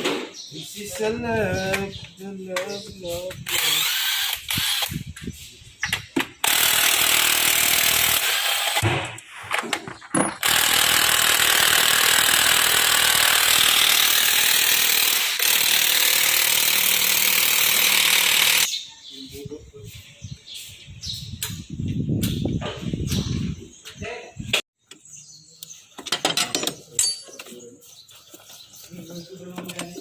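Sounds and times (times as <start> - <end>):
power wrench running: 3.5 - 5.0, 6.4 - 8.8, 10.2 - 18.7.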